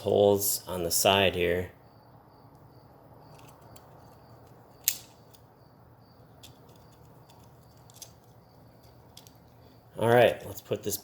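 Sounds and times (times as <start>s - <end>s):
small metal parts clicking: 3.3s - 5.4s, 6.4s - 9.6s
sharp click: 4.8s - 5.4s.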